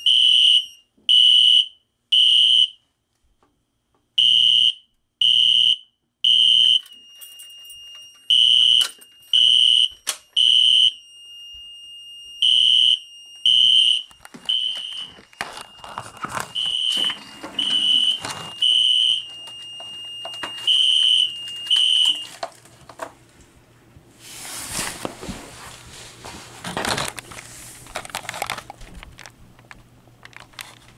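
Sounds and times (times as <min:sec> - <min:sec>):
fire alarm horn blasts: 0:00.0 - 0:02.8, 0:04.2 - 0:22.3
rustling handling noise: 0:14.0 - 0:30.9.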